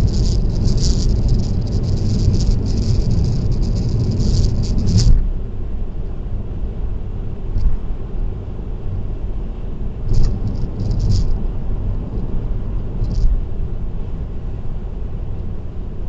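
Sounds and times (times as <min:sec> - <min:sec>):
car rattling: 0:00.0 - 0:05.2, 0:10.0 - 0:11.6, 0:13.0 - 0:13.4
road and engine rumble: 0:00.0 - 0:16.0.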